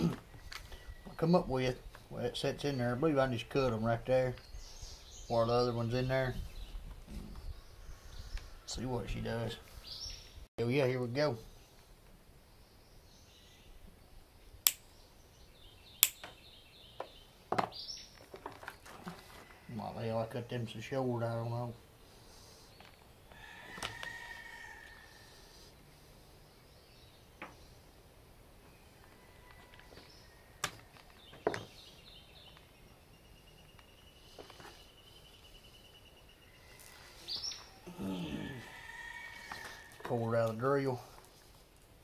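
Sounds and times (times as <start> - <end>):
faint bird chirping: 11.4 - 41.6
hand tool clicks: 14.6 - 14.8, 16.0 - 16.3
wire cutters snipping: 16.0 - 16.3
wire being handled: 17.5 - 19.5.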